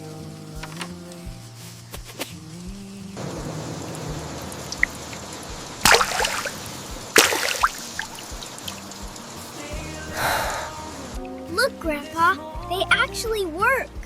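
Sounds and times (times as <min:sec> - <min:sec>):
soft music: 0:00.0 - 0:14.0
water splashes: 0:02.2 - 0:11.9
water trickling through gutter: 0:02.4 - 0:12.2.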